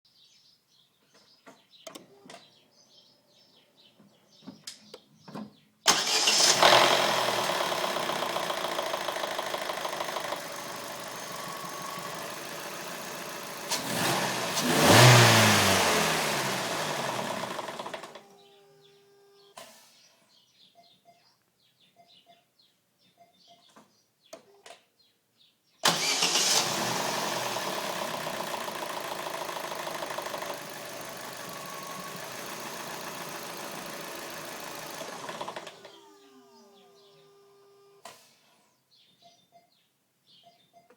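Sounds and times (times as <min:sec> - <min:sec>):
engine revving: 0:05.9 - 0:18.2, 0:25.8 - 0:36.4
engine clatter: 0:05.9 - 0:18.3, 0:25.8 - 0:36.2
car engine starting and running: 0:05.9 - 0:18.4, 0:25.8 - 0:38.2.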